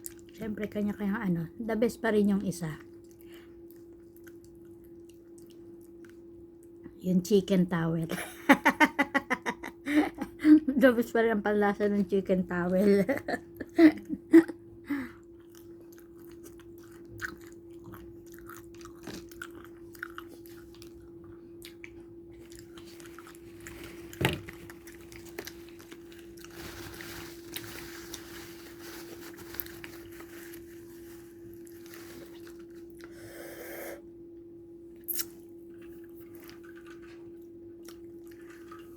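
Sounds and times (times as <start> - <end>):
crunchy chewing of fried chicken: 2.6 - 6.8, 15.1 - 33.2, 35.0 - 38.9.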